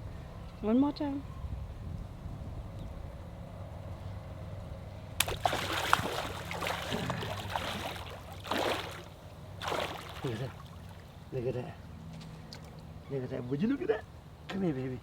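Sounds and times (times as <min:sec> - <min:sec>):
low steady hum: 0:05.0 - 0:11.5
sharp smack on water: 0:05.2 - 0:11.0
water splashing and churning: 0:05.2 - 0:11.3.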